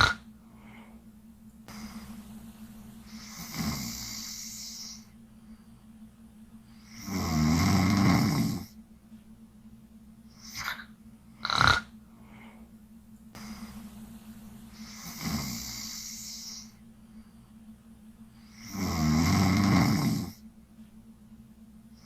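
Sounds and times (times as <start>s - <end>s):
sharp snorts: 0.0s - 0.2s, 10.3s - 11.9s
woman snoring: 0.0s - 0.9s, 1.7s - 5.1s, 6.7s - 8.8s, 10.3s - 12.5s, 13.4s - 16.8s, 18.4s - 20.4s
woman breathing: 0.0s - 7.1s, 12.0s - 18.7s.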